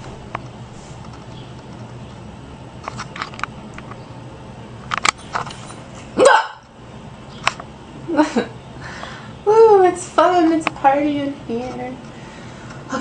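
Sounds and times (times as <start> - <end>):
woman hiccuping: 6.2 - 6.6.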